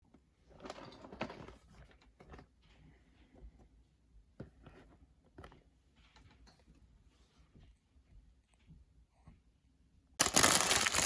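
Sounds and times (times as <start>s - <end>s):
plastic bricks clicking: 10.2s - 11.0s.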